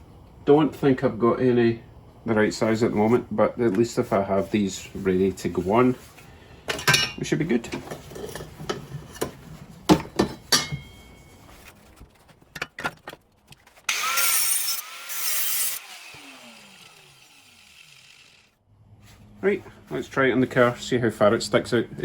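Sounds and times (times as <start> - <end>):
cut-off tool cutting metal pipe: 13.9 - 18.4.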